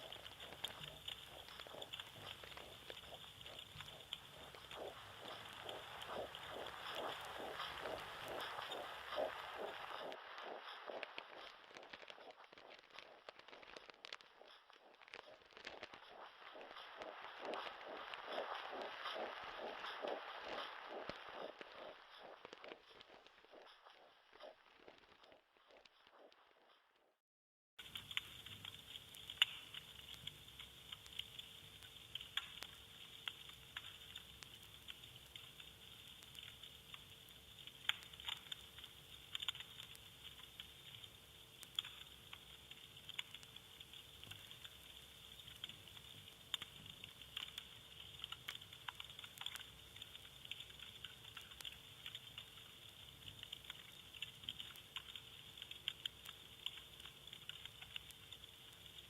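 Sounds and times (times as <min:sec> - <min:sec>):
faint steady hum: 0:00.0 - 0:26.4
vinyl crackles and pops: 0:00.0 - 0:27.1, 0:27.8 - 0:59.0.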